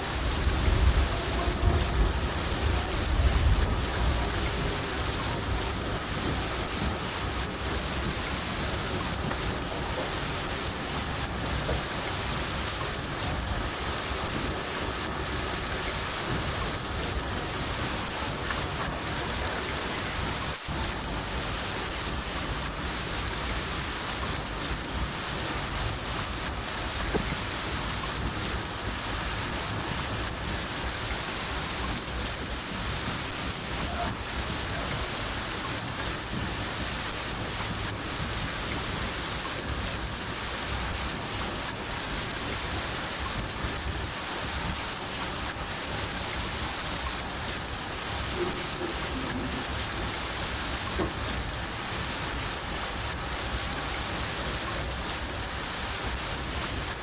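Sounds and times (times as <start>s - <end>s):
low rumble of thunder: 0.0s - 44.8s
cricket chirping: 0.0s - 57.0s
rain hissing: 0.0s - 57.0s.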